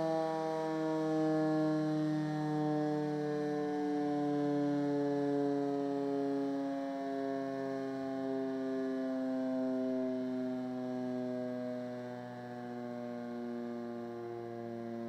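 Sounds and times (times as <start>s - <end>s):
civil defence siren wailing: 0.0s - 15.0s.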